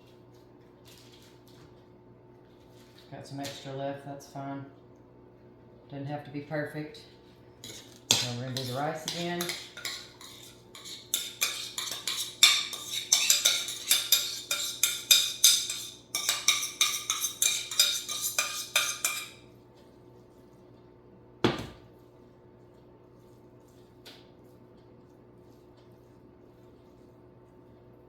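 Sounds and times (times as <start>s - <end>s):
spoon scraping and tapping a pot: 7.6s - 19.4s.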